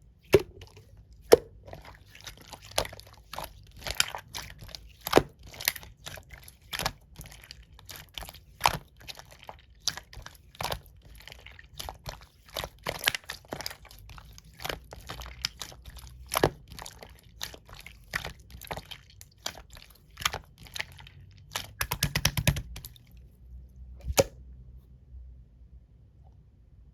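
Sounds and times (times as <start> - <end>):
slime clicking and popping: 21.5 - 22.9.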